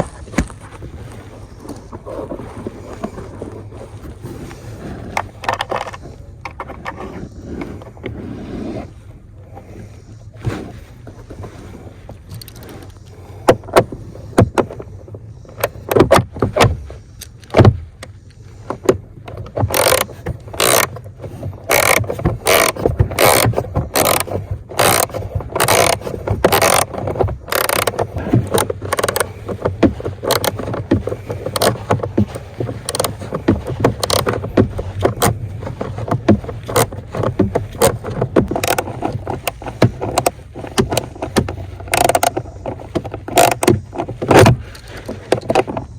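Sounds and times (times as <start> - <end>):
hand tools clicking and knocking: 15.5 - 45.9.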